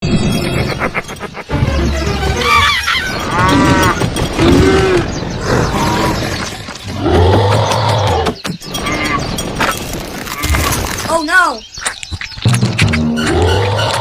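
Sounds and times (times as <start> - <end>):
background music: 0.0 - 9.4, 12.5 - 14.0
animal-like calls: 0.3 - 9.4.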